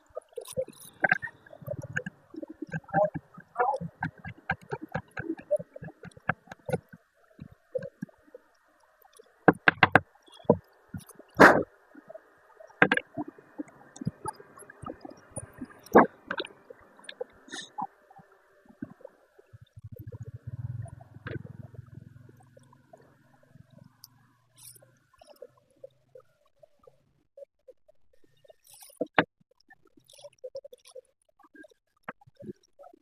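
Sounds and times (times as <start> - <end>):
low pulsing hum: 19.6 - 24.0.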